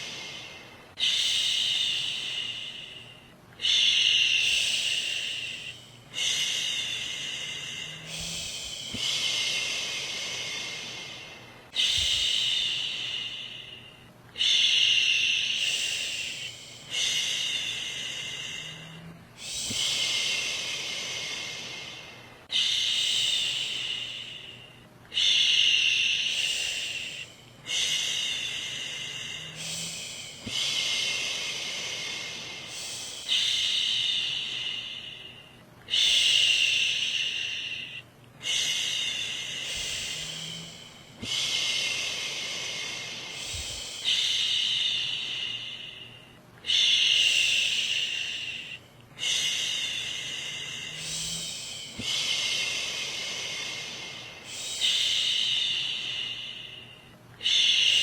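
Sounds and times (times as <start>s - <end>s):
woman shushing: 51.0s - 52.2s.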